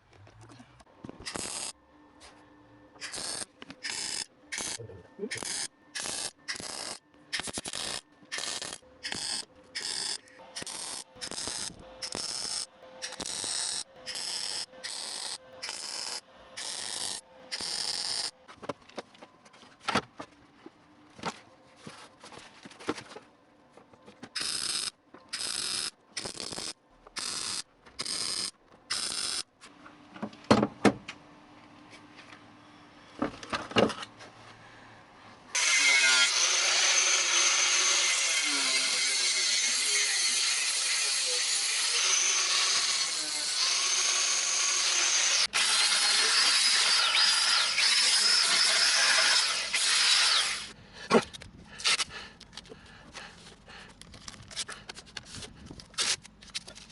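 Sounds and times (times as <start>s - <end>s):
welder crackling bursts: 1.2s - 1.8s, 3.0s - 18.3s, 24.4s - 29.5s.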